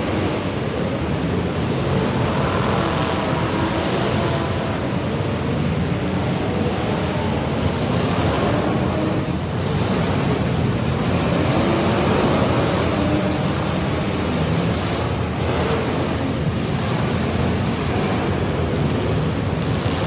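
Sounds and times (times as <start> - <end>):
car engines revving: 0.0 - 20.0.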